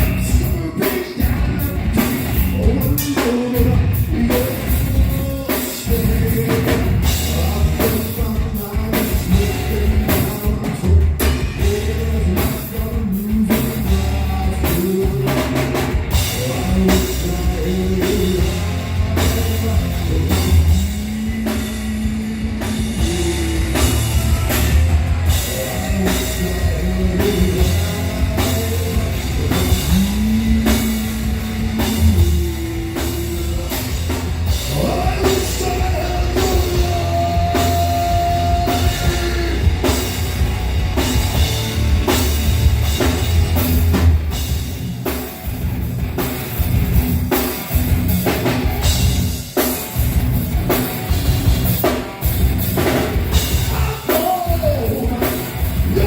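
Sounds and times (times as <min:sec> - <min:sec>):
person singing: 0:00.0 - 0:40.2, 0:53.3 - 0:56.0
heavy rock band playing: 0:00.0 - 0:56.0
pounding drum kit: 0:00.0 - 0:56.0.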